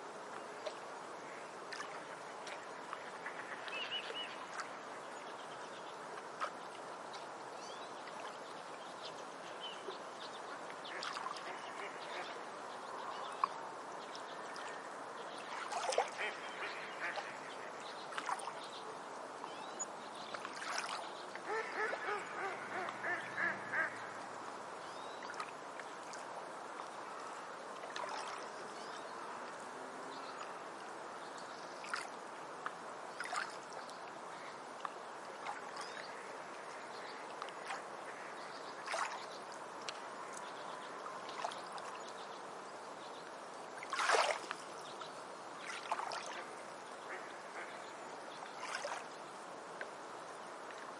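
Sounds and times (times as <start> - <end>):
steady background hiss: 0.0 - 50.9
bird calls: 20.6 - 24.1.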